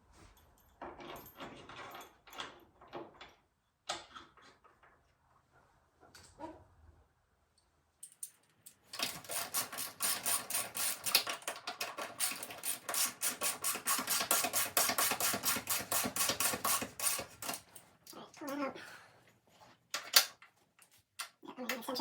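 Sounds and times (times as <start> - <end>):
ratchet wrench clicking: 9.2 - 11.3.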